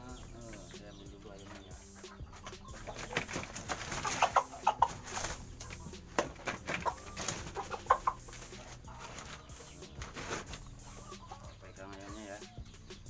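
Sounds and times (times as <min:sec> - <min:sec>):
chicken clucking and squawking: 0:00.0 - 0:13.0
scuffling knocks of handling: 0:08.4 - 0:10.6.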